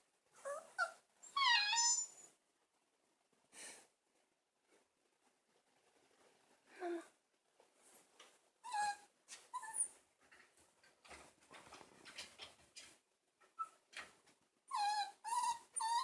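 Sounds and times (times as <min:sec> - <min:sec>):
puppy whimpering: 0:00.4 - 0:02.2, 0:08.7 - 0:09.9, 0:14.7 - 0:16.0.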